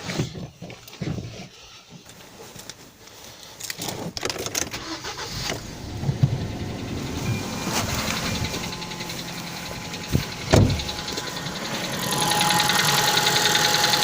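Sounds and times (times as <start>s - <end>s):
car engine starting and running: 4.5s - 14.0s.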